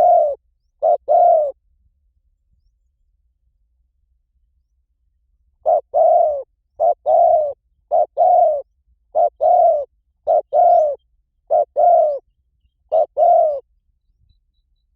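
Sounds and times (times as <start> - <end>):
dove cooing: 0.0 - 1.6, 5.6 - 12.3, 12.9 - 13.7.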